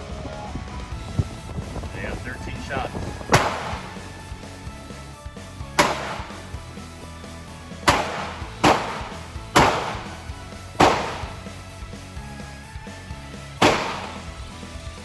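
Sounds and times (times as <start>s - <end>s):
background music: 0.0s - 15.0s
gunshots: 2.0s - 4.5s, 5.8s - 6.7s, 7.8s - 11.9s, 13.6s - 14.7s.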